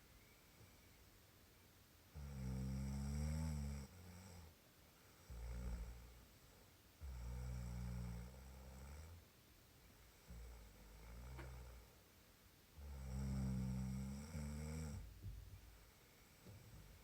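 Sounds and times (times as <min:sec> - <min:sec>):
person snoring: 0:12.8 - 0:15.0.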